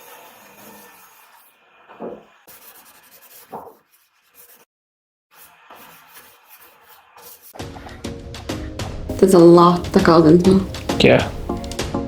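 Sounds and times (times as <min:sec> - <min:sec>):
rubbing strokes on cricket bat: 0:00.0 - 0:04.7, 0:05.3 - 0:08.0.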